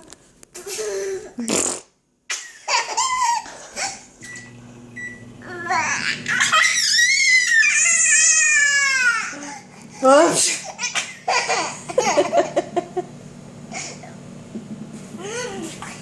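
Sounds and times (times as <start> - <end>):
baby laughing: 2.3 - 4.1, 5.5 - 9.6, 10.6 - 12.8.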